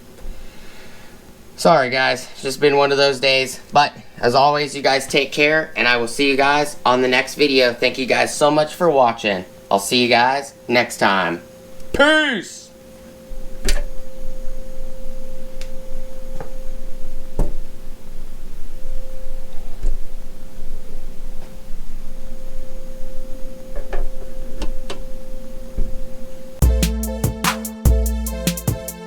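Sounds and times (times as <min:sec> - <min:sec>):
steady electronic tone: 0:05.8 - 0:29.0.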